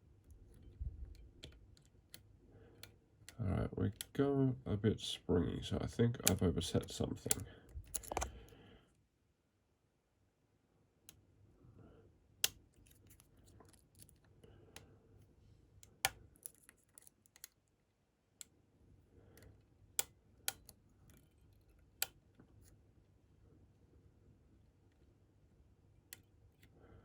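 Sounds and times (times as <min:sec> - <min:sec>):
lock pick scraping: 0:07.3 - 0:08.4.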